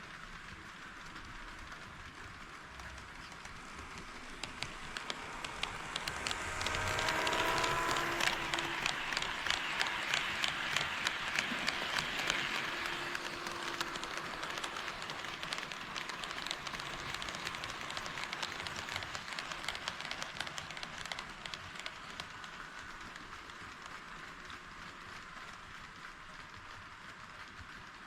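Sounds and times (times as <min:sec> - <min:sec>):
steady running hiss: 0:00.0 - 0:21.9
model train wheels clicking: 0:00.0 - 0:28.0.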